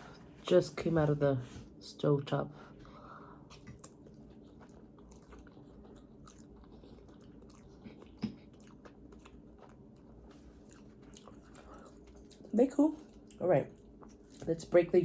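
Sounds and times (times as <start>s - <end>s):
person chewing noodles: 3.1s - 14.4s.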